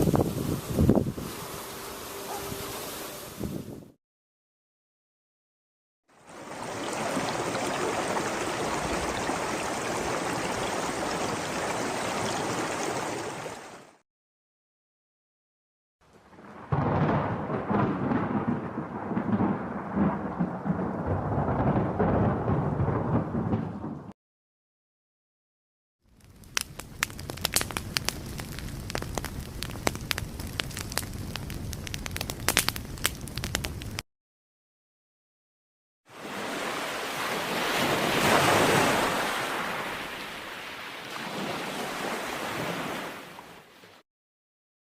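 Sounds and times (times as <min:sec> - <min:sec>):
river water rushing: 0:06.2 - 0:13.9, 0:36.1 - 0:43.2
fire crackling: 0:26.0 - 0:34.0.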